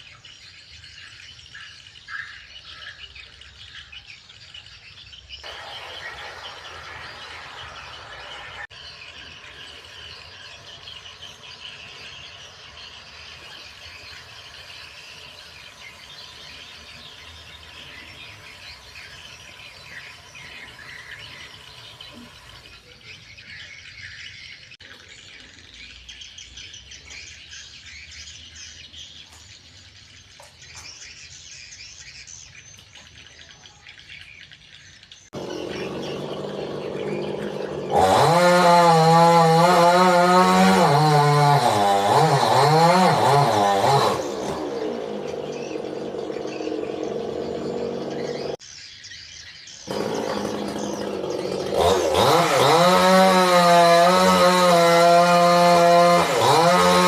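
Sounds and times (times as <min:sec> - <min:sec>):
birds chirping: 0:00.0 - 0:57.0
chainsaw engine revving: 0:05.5 - 0:08.7, 0:35.4 - 0:48.6, 0:49.9 - 0:57.0.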